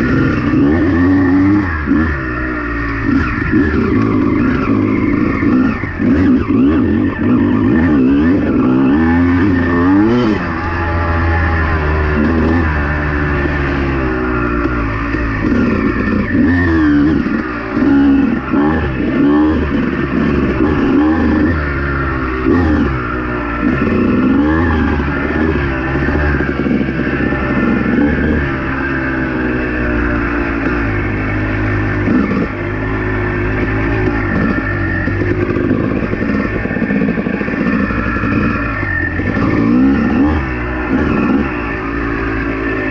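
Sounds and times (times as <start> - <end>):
dirt bike engine revving: 0.0 - 42.9.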